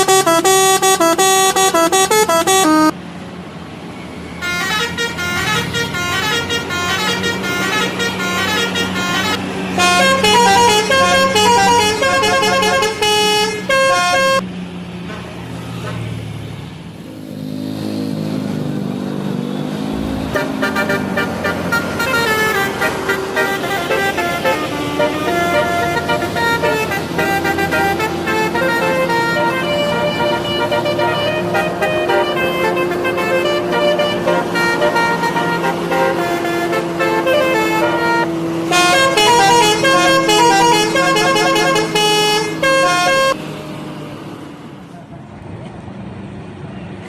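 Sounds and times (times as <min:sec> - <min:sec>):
bus musical horns: 0:00.0 - 0:03.0, 0:04.4 - 0:14.4, 0:19.6 - 0:43.6
bus engine running: 0:00.0 - 0:47.0.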